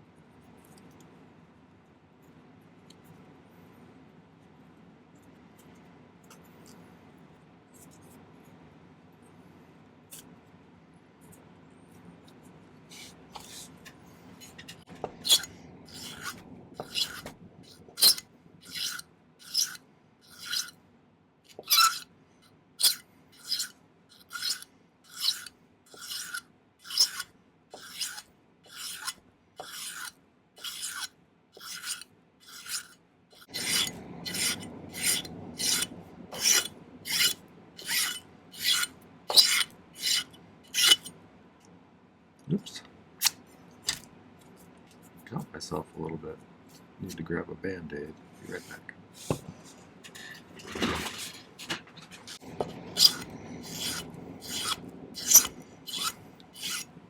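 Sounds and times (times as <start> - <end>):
hand file rasping on metal: 15.2 - 20.8, 21.5 - 22.1, 22.8 - 41.1, 52.3 - 56.9.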